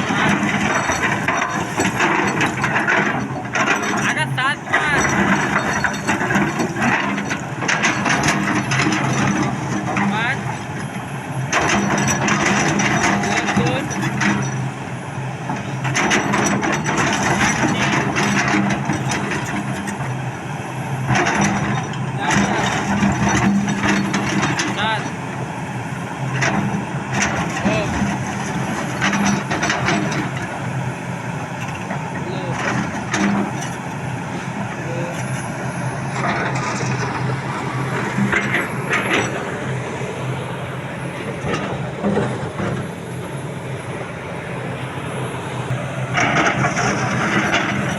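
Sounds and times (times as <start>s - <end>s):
clattering and clicking: 0.0s - 10.1s, 46.2s - 47.9s
diesel machinery running: 0.0s - 47.9s
excavator engine hum: 0.0s - 47.9s.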